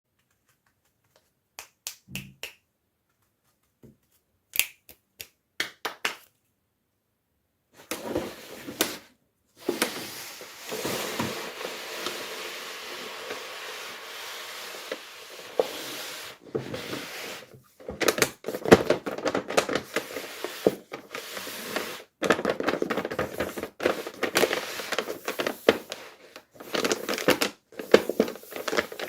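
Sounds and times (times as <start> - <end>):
sharp clicks and taps: 0.1 - 6.3
packaging rustling: 7.8 - 29.0.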